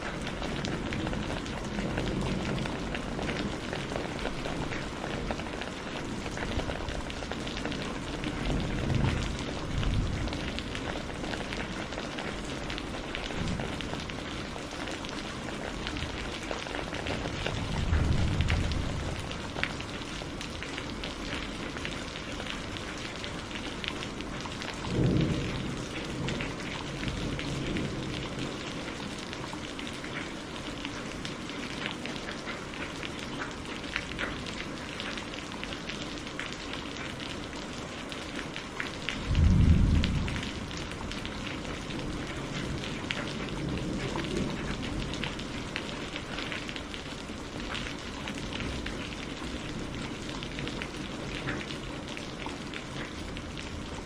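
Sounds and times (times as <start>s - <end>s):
steady rain pattering: 0.0s - 54.0s
thunder rolls: 17.4s - 19.4s, 39.2s - 42.8s.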